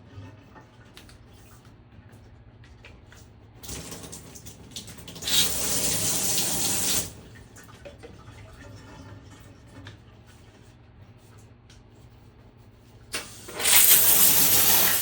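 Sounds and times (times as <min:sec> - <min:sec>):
shower head spraying water: 0:13.5 - 0:15.0.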